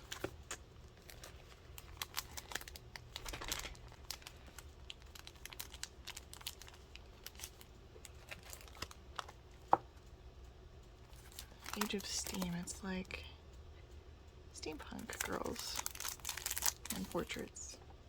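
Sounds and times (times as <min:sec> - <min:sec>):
plastic wrappers crinkling: 0:00.0 - 0:09.8, 0:11.0 - 0:12.8, 0:14.7 - 0:17.6.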